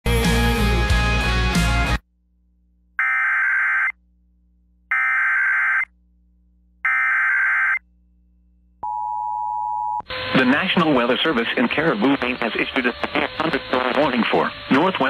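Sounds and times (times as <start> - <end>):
music: 0.0 - 2.0
digital data bursts: 10.4 - 15.0.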